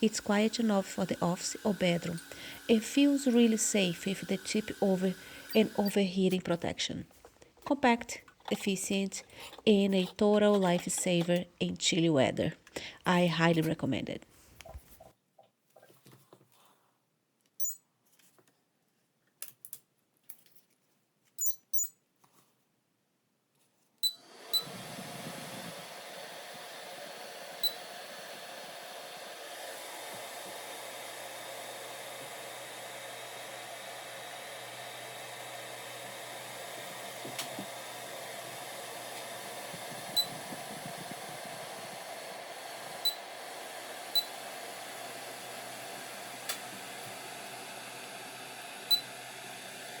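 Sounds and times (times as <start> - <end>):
space heater fan blowing: 0.0 - 6.8, 24.2 - 50.0
short high electronic beeps: 17.6 - 17.8, 21.4 - 21.9.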